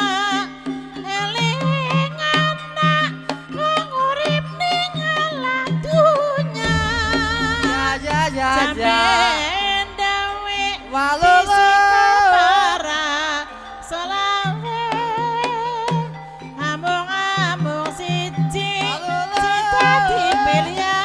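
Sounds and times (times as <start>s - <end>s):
wavering sung melody: 0.0s - 21.0s
low drone: 6.6s - 14.5s
steady drum pulse: 6.6s - 15.3s.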